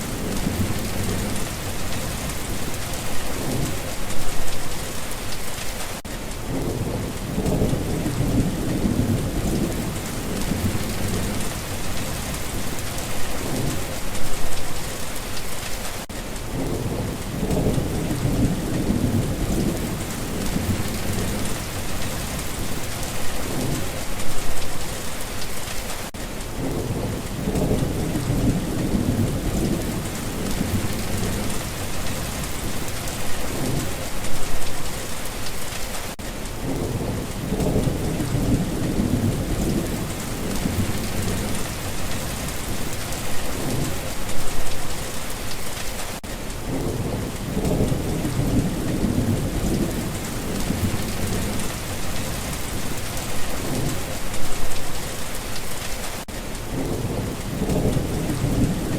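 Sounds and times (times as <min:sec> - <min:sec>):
low rolls of thunder: 0:00.0 - 0:04.7, 0:06.4 - 0:14.7, 0:16.4 - 0:24.9, 0:26.4 - 0:34.7, 0:36.6 - 0:44.8, 0:46.6 - 0:54.9, 0:56.7 - 0:58.9
heavy rain: 0:00.0 - 0:58.9.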